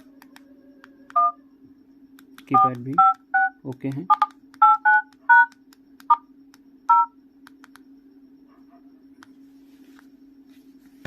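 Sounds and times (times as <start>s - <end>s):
low steady hum: 0.0s - 11.0s
phone keypad dialing beeps: 0.7s - 1.4s, 2.2s - 7.8s.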